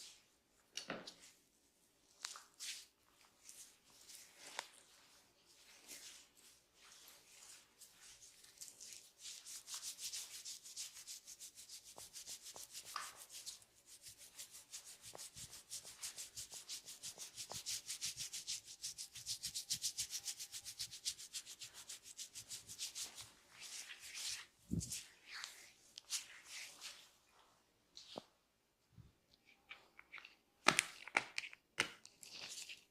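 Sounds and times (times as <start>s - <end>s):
hands scratching scalp and hair: 2.2s - 27.1s.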